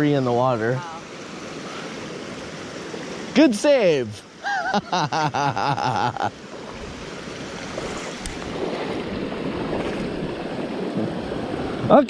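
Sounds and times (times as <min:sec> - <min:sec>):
stream water rushing: 0:00.0 - 0:12.0
person's voice: 0:03.4 - 0:04.2.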